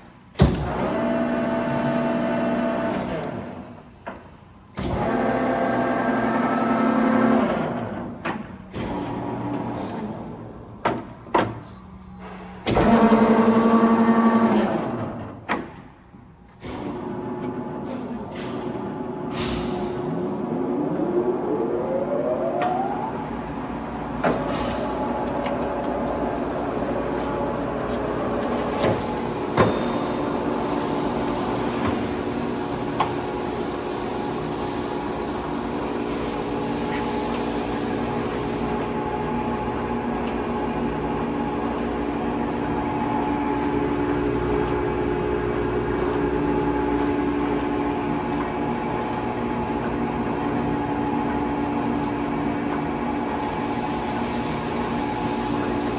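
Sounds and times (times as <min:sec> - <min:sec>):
steady machine hum: 0:18.9 - 0:55.9
motor whine rising: 0:19.9 - 0:29.4
hiss: 0:28.4 - 0:38.9, 0:53.2 - 0:55.9.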